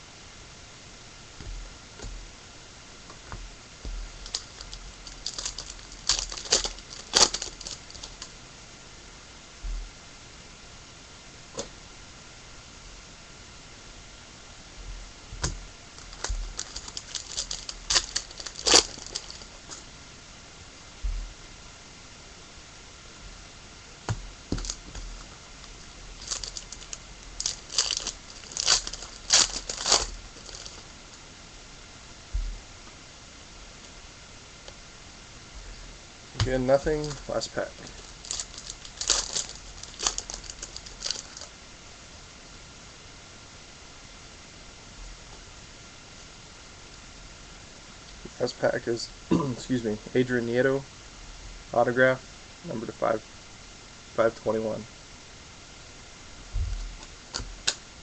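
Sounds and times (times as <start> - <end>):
foil wrapper crinkling: 4.1 - 8.3, 16.0 - 19.8, 24.5 - 31.2, 36.4 - 41.5
cards being shuffled: 4.2 - 8.3, 16.0 - 19.8, 26.2 - 30.9.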